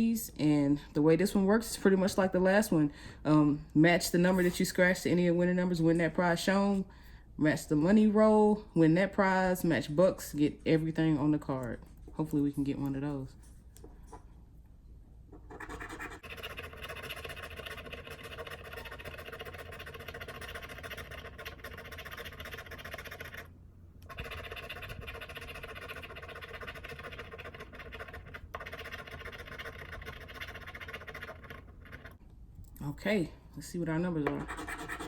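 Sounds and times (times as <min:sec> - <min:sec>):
lottery ticket being scratched: 0:15.4 - 0:23.5, 0:24.1 - 0:32.2, 0:34.2 - 0:35.0.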